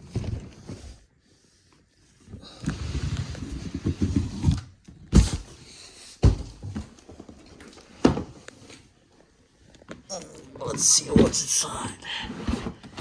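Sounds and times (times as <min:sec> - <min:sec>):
cardboard rustling and scraping: 0:00.0 - 0:06.1, 0:12.1 - 0:13.0.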